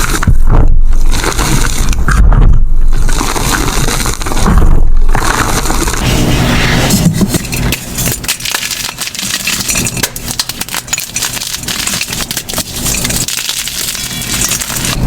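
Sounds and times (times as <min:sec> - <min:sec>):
chalk block crunching: 0:01.0 - 0:02.3, 0:03.0 - 0:15.0.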